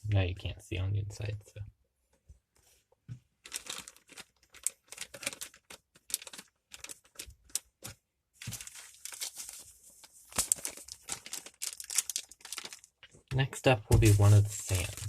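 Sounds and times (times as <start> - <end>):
plastic packaging crinkling: 3.4 - 13.2, 14.0 - 15.0.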